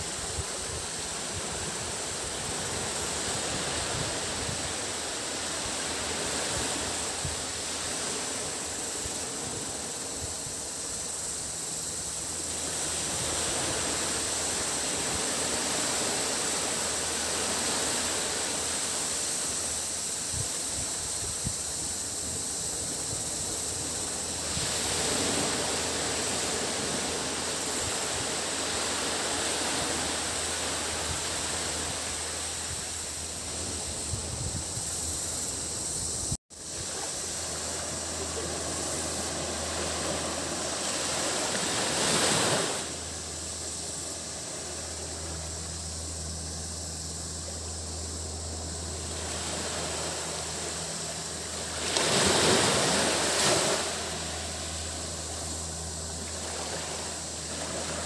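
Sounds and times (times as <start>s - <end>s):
sea waves washing onto beach: 0.0s - 46.4s, 48.4s - 58.0s
cicadas droning: 0.0s - 58.0s
low steady hum: 21.2s - 58.0s.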